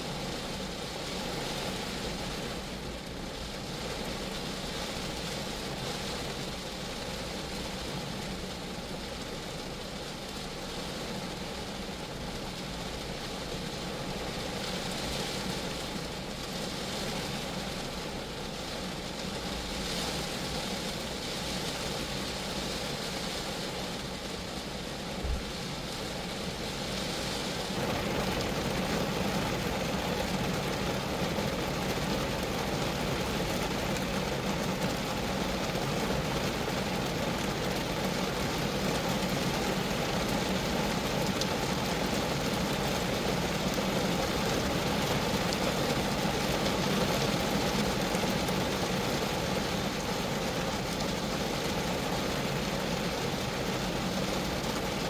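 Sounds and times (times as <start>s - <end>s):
rain on a car: 0.0s - 55.0s
low thump: 25.2s - 25.6s.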